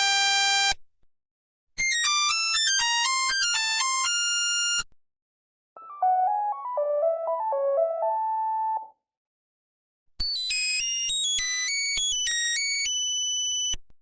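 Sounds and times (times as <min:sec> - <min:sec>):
softer lower ringtone melody: 0:05.8 - 0:08.9.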